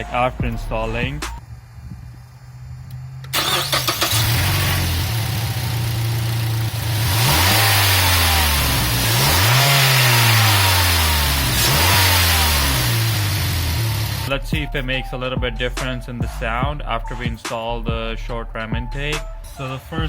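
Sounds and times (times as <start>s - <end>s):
car engine idling and revving: 0.0s - 14.6s.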